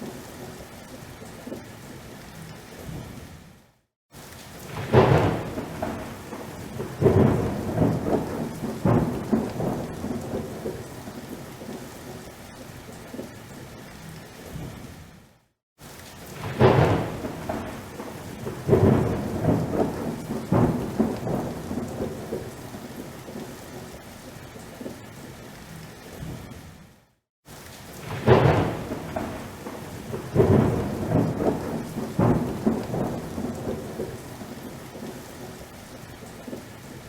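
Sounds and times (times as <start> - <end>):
steady rain: 0.0 - 37.0
thunder claps and rumbles: 4.6 - 12.4, 16.3 - 24.1, 27.9 - 36.7.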